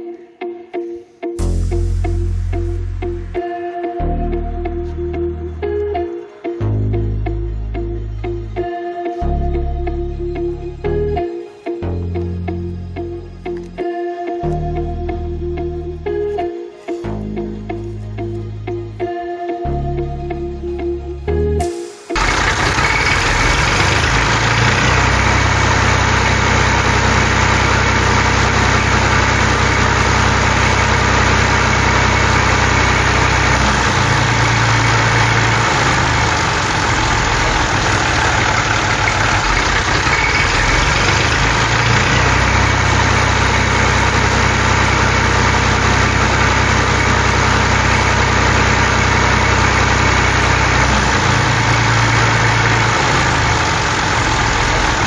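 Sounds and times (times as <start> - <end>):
tractor engine idling: 22.2 - 55.0.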